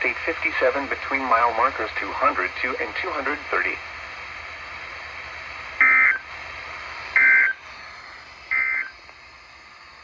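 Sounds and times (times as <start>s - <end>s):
radio hiss: 0.0s - 10.0s
warbling digital data tones: 8.5s - 9.0s.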